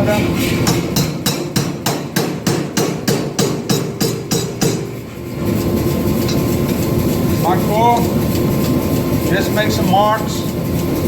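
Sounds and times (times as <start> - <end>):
steady hum: 0.0 - 11.0
power hammer striking steel: 0.6 - 5.0.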